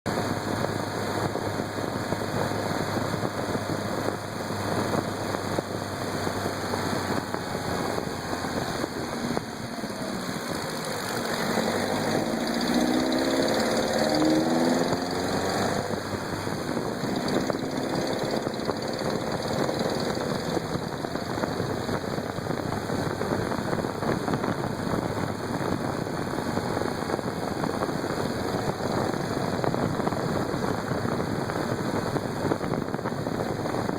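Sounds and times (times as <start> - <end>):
vehicle engine knocking: 16.9 - 22.1.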